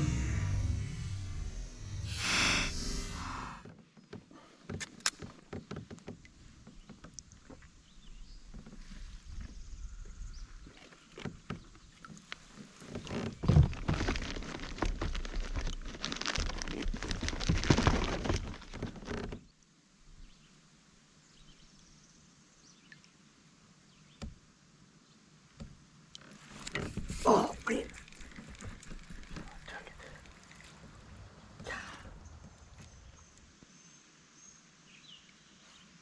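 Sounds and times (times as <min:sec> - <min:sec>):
knocks and rustling in kayak: 0:03.6 - 0:19.5, 0:25.6 - 0:33.6.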